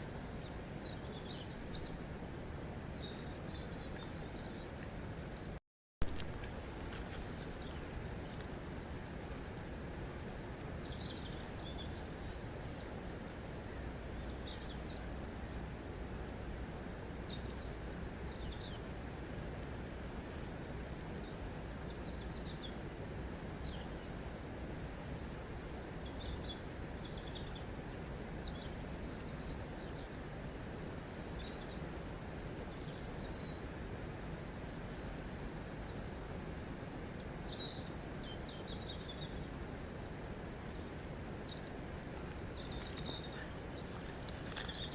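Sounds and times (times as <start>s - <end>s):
running water: 38.9s - 44.9s
small birds chirping: 40.1s - 44.9s.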